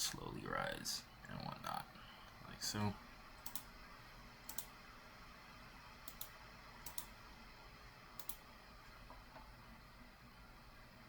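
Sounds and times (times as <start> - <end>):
computer mouse clicking: 3.4 - 3.7, 4.4 - 4.8, 6.0 - 7.2, 8.2 - 8.4.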